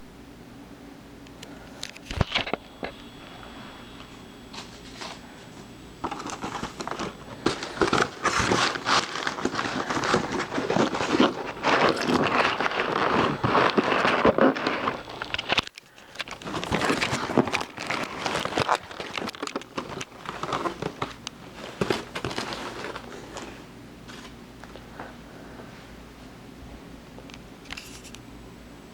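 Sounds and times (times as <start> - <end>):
packaging crinkling and rustling: 4.5 - 25.1.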